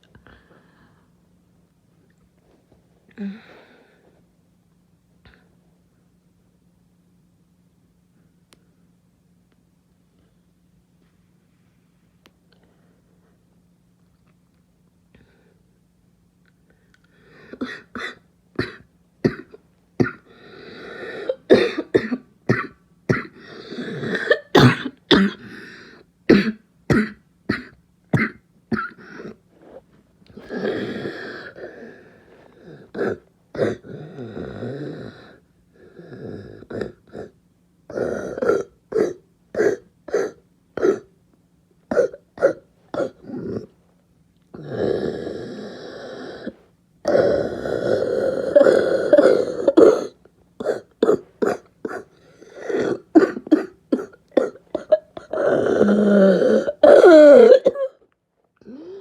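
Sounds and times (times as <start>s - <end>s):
person coughing: 17.5s - 20.4s, 21.1s - 29.4s, 32.6s - 34.0s, 37.9s - 41.1s, 41.9s - 43.7s, 48.5s - 58.0s.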